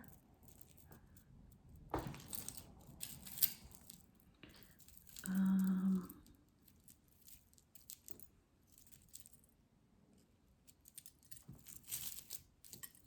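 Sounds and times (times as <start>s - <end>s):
jewelry clinking: 0.0s - 9.6s, 10.5s - 13.0s
woman humming: 5.2s - 6.3s.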